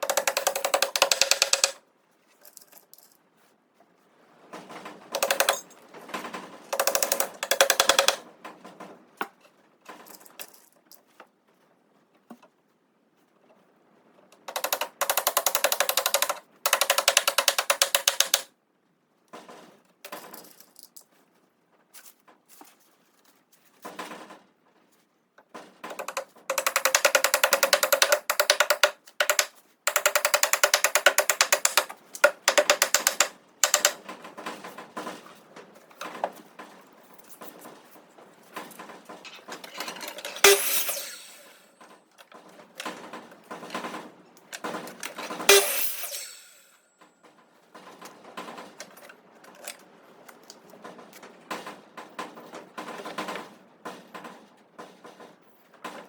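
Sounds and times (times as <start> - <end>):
handheld power tool rattling: 0.0 - 1.8, 5.2 - 5.7, 6.7 - 8.2, 14.5 - 18.5, 25.9 - 35.2, 38.6 - 41.7, 44.6 - 46.8.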